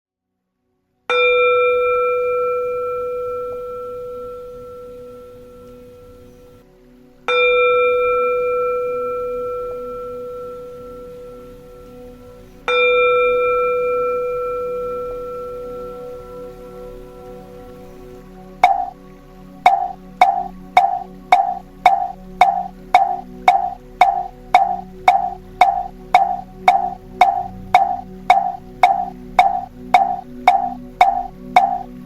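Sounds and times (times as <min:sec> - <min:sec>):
temple bell ringing: 0:01.1 - 0:06.3, 0:07.3 - 0:11.8, 0:12.7 - 0:17.0, 0:18.6 - 0:19.0.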